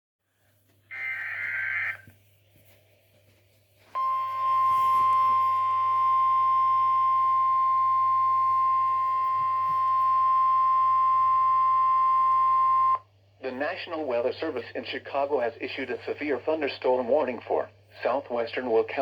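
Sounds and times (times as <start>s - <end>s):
steady alarm tone: 0.9s - 2.1s, 4.0s - 13.0s.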